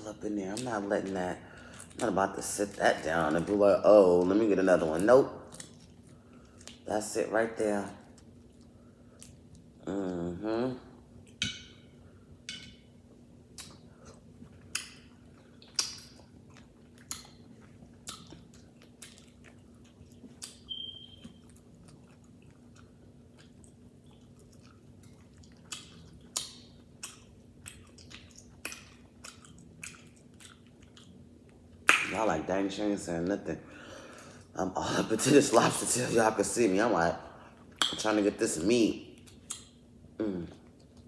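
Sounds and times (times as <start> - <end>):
faint low hum: 0.0 - 41.0
chewing: 4.8 - 6.9, 13.5 - 32.0, 39.1 - 39.8.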